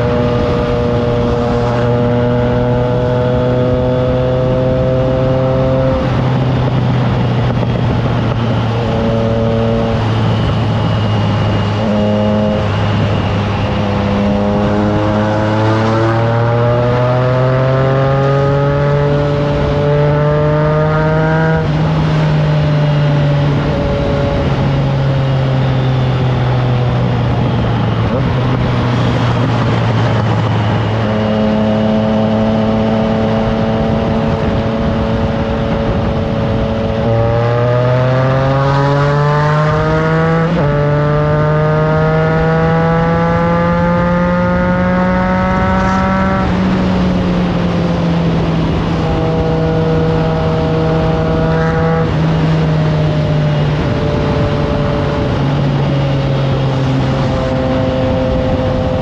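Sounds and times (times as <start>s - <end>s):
motorcycle engine accelerating: 0.0s - 59.0s
wind noise on microphone: 0.0s - 59.0s.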